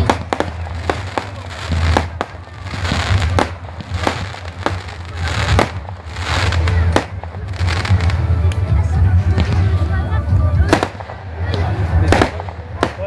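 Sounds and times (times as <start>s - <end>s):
fireworks bangs: 0.0s - 8.6s, 10.6s - 13.0s
steady low rumble: 0.0s - 13.0s.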